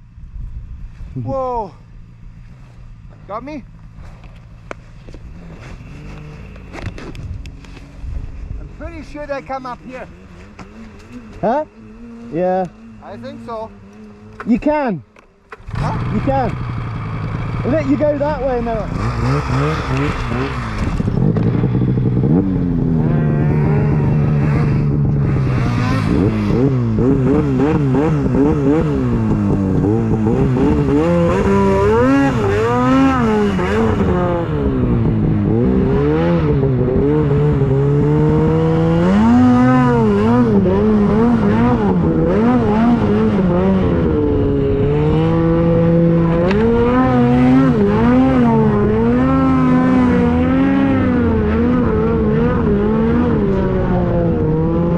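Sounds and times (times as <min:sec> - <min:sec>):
snowmobile engine revving: 0:05.3 - 0:07.9, 0:08.6 - 0:54.9.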